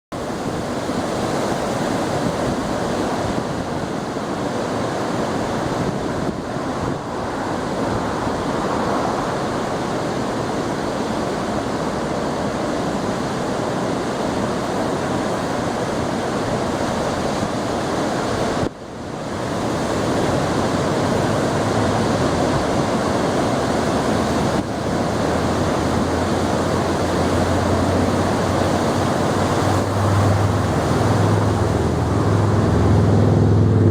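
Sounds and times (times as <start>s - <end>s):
ocean surf breaking: 0.2s - 33.9s
low hum: 29.0s - 33.9s.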